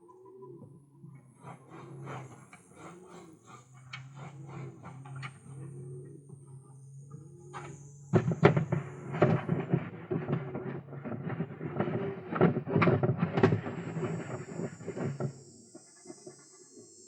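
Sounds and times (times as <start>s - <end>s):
pigeons cooing: 0.0s - 10.4s.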